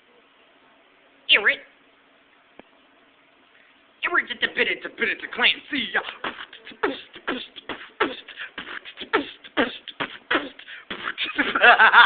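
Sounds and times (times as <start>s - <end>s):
person beatboxing: 5.1s - 11.6s.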